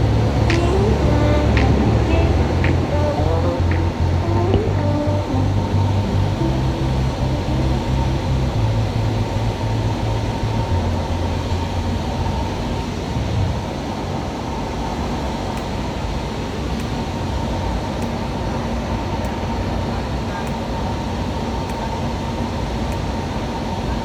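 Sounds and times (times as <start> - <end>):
low shifting tones: 0.0 - 13.6
aircraft engine and propeller drone: 0.0 - 24.0.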